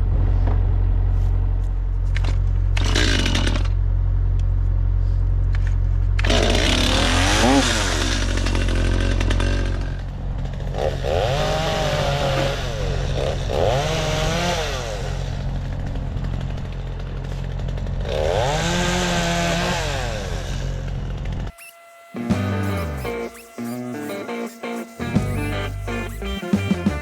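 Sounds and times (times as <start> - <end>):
heavier engine running: 0.0 - 11.1
chainsaw revving: 2.8 - 3.8, 6.2 - 27.0.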